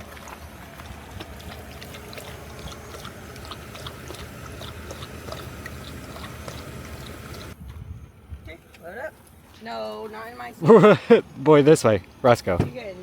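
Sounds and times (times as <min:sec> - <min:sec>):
dog lapping water: 0:00.0 - 0:07.6
wind rumbling on microphone: 0:00.7 - 0:08.6.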